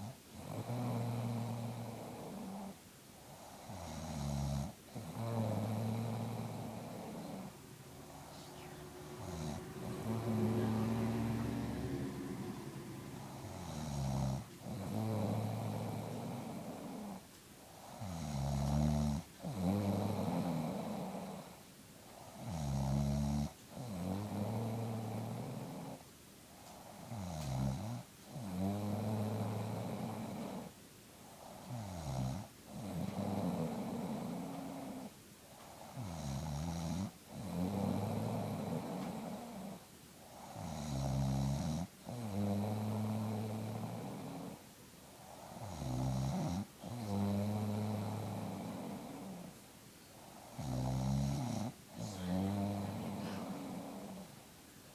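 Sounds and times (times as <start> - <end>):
woman snoring: 0.0 - 17.2, 17.8 - 21.5, 35.8 - 44.6, 45.2 - 49.6, 50.4 - 54.3.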